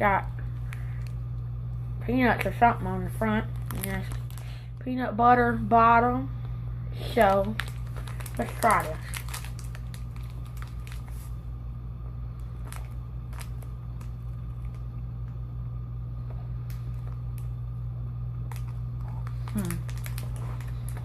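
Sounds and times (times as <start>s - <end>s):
low electrical hum: 0.0s - 21.0s
person chewing crunchy bar: 7.5s - 11.3s, 18.5s - 21.0s.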